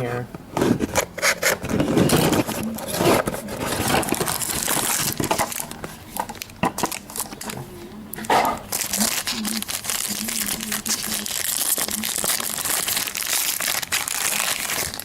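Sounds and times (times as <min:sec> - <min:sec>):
cardboard rubbing and scraping: 0:00.6 - 0:06.1
wrapper crinkling: 0:01.6 - 0:15.0.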